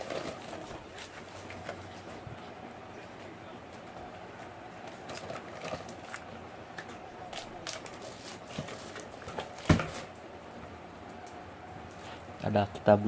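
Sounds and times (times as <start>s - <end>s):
packaging clicks and rustles: 0.0s - 2.2s, 4.8s - 10.2s.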